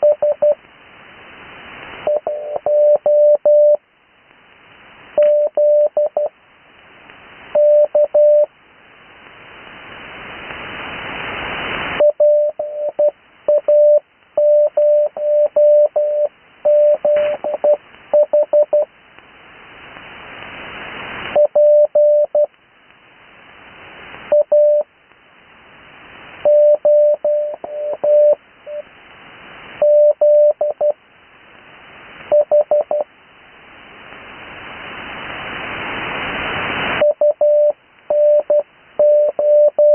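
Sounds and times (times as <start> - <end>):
radio hiss: 0.0 - 39.9
morse code tone: 2.1 - 3.8, 12.0 - 18.9, 26.4 - 28.8, 29.8 - 31.0, 37.0 - 39.9.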